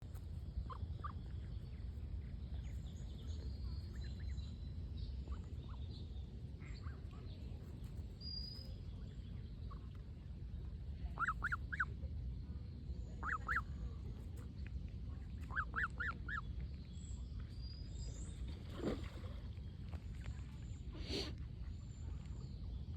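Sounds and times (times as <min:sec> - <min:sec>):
steady low rumble: 0:00.0 - 0:22.9
small birds chirping: 0:00.1 - 0:11.9, 0:12.7 - 0:22.9
goose calls: 0:11.2 - 0:11.8.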